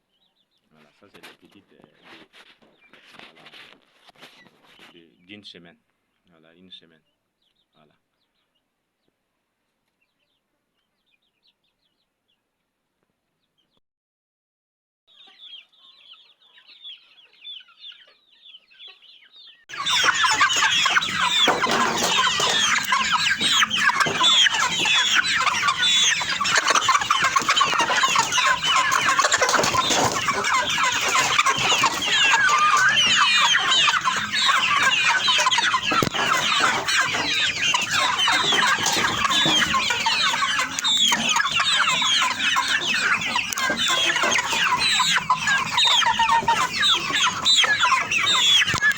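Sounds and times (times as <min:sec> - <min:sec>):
chicks peeping: 0:00.0 - 0:05.6, 0:09.8 - 0:12.6, 0:15.1 - 0:48.9.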